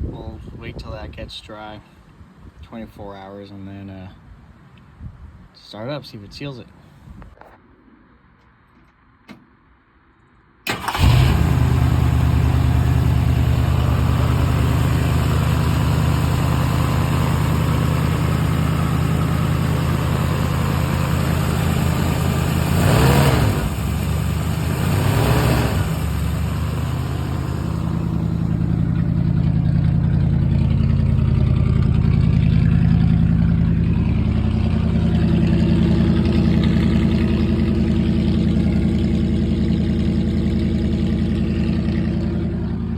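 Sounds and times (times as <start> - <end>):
car engine starting and idling: 10.6 - 42.9
engine revving: 10.7 - 42.9.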